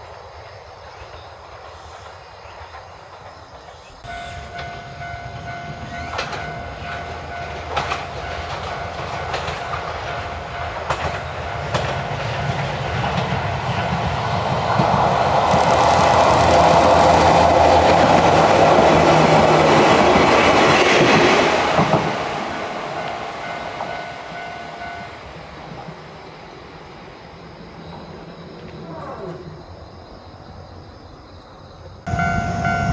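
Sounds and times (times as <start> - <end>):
electric train passing: 0.0 - 32.9
wheels clicking over rail joints: 1.6 - 26.0.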